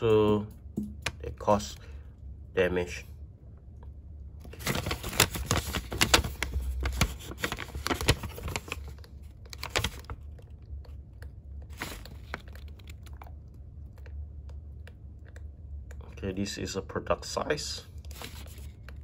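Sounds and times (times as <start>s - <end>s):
pages turning: 4.4s - 10.5s, 11.6s - 13.3s, 18.0s - 19.0s
paper rustling and crinkling: 4.4s - 10.5s, 11.6s - 13.3s, 18.0s - 19.0s.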